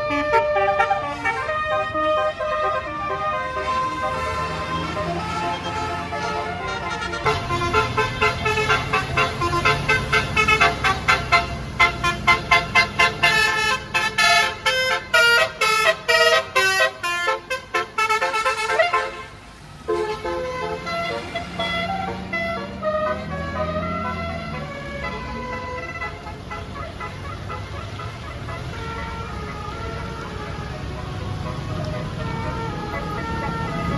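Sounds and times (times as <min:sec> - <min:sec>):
bus horn playing staccato tune: 0:00.0 - 0:33.9.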